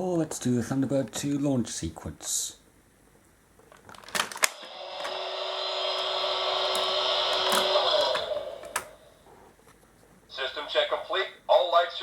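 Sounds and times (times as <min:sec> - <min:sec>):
toy whirring hum: 0:04.6 - 0:09.0.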